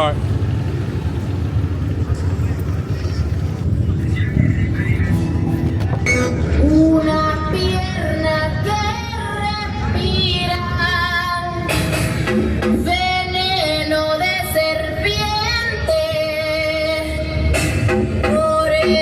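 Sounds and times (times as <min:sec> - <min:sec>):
heavy bass music: 0:02.2 - 0:13.4, 0:16.0 - 0:19.0.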